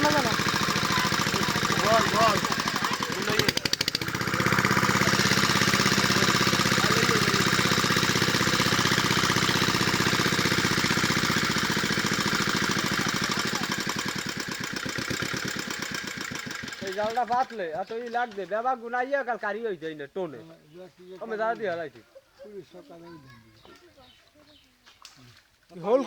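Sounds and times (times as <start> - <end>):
small engine chugging: 0.0 - 18.4.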